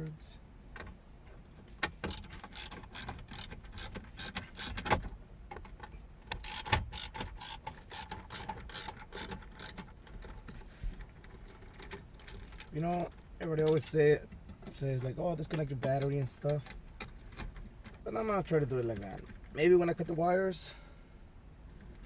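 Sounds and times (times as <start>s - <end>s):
ratcheting screwdriver clicking: 6.3s - 9.8s.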